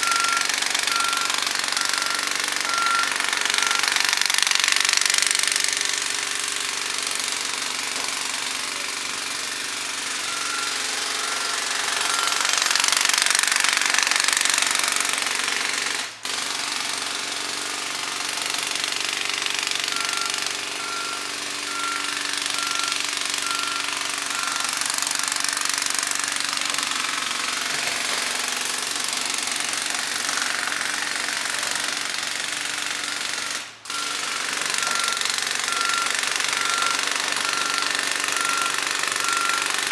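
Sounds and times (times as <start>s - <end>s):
reversing alarm beeping: 0.0s - 4.2s, 10.1s - 12.8s, 19.8s - 25.4s, 32.9s - 39.9s
heavy equipment engine running: 0.0s - 4.3s, 9.0s - 12.7s, 19.9s - 25.4s, 33.9s - 39.7s
jackhammer hammering pavement: 0.0s - 39.9s.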